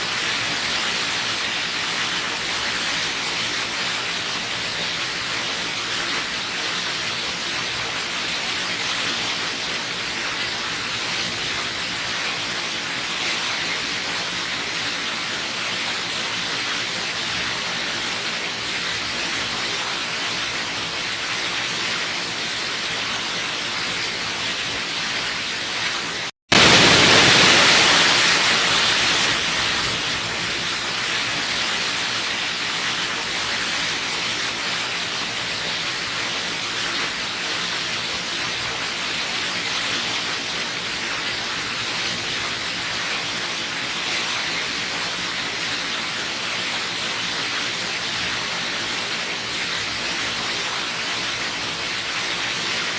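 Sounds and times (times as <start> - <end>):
waterfall rushing: 0.0 - 52.9.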